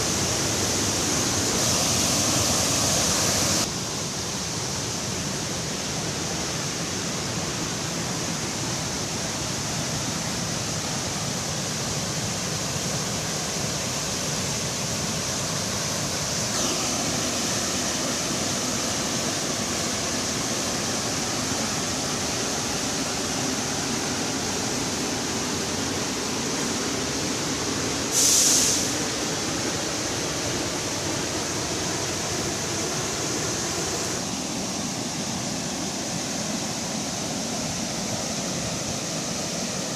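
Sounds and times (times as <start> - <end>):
waterfall roaring: 0.0 - 39.9
brief loud hiss: 16.4 - 18.8, 28.0 - 29.2.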